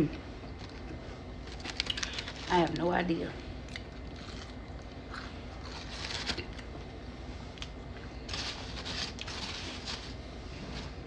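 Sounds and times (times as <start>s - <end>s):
crunchy chewing: 3.6s - 6.7s.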